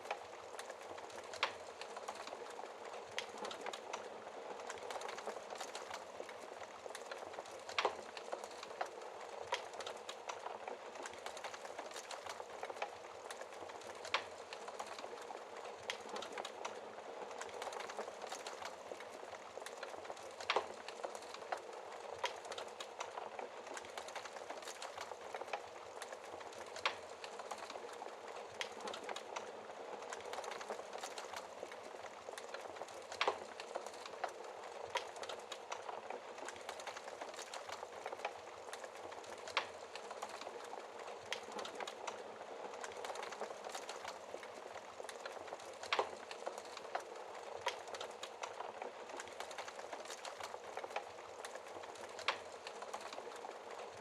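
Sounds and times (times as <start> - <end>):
wood fire hissing and crackling: 0.0 - 54.0.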